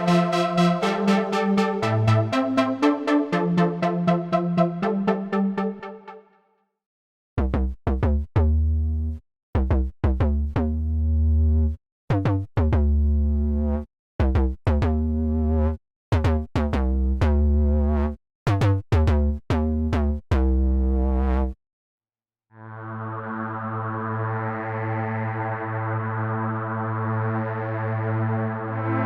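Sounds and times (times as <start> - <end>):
synthesizer stabbed notes: 0.0 - 6.2.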